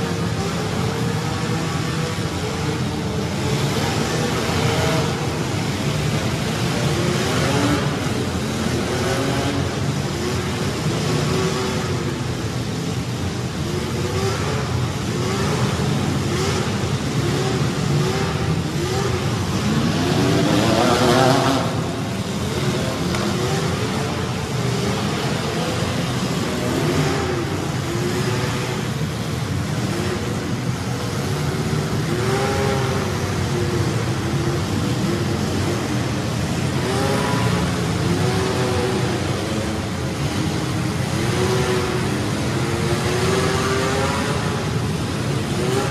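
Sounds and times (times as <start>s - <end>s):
car engines revving: 0.0s - 45.9s.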